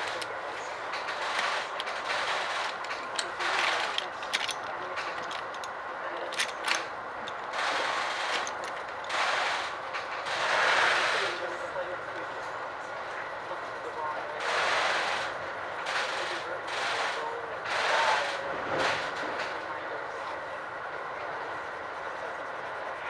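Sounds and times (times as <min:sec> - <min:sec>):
train clicks and knocks: 0:00.0 - 0:12.6, 0:13.9 - 0:20.5
train rushing noise: 0:00.0 - 0:23.0.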